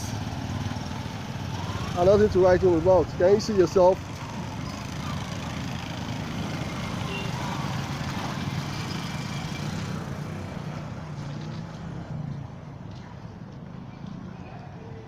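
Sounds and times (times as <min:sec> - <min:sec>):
road noise: 0:00.0 - 0:15.0.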